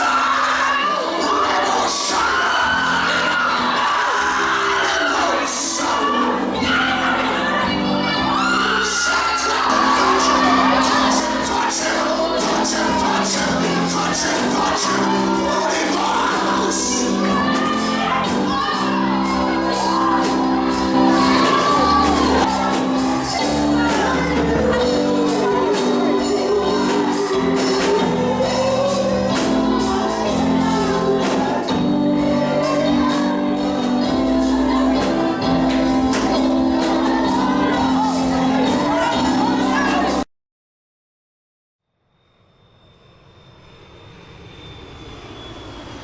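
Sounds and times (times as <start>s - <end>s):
keyboard chords: 0.0s - 40.3s
people singing and calling out: 0.0s - 40.3s
drums and cymbals: 8.5s - 40.2s.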